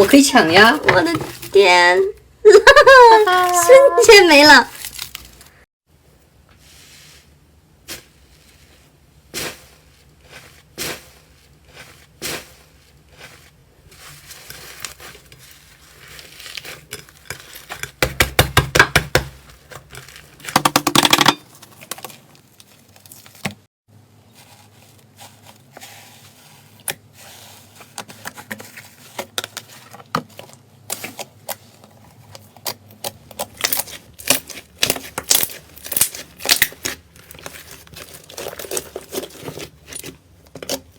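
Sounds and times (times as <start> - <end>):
slime crackling and popping: 4.8 - 5.5, 32.6 - 40.8.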